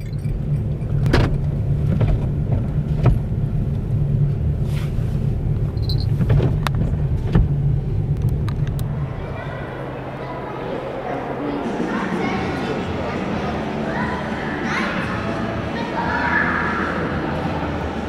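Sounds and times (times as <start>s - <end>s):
car engine rumbling: 0.0s - 12.4s.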